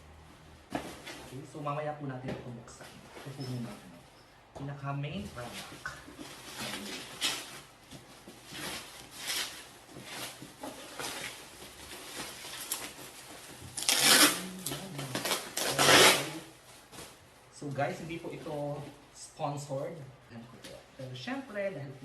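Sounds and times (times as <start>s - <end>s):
packaging rustling and scraping: 5.3s - 17.3s.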